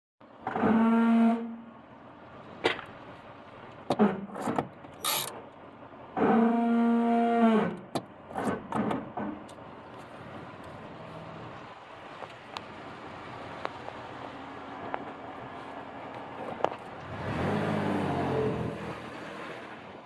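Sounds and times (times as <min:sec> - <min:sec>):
truck brakes groaning: 0:05.0 - 0:05.4, 0:16.3 - 0:20.0.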